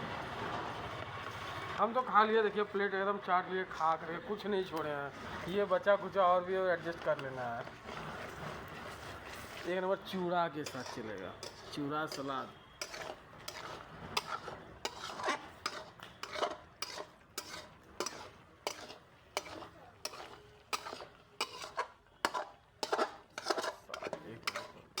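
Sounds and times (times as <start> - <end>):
utensils clinking against dishes: 10.6 - 25.0.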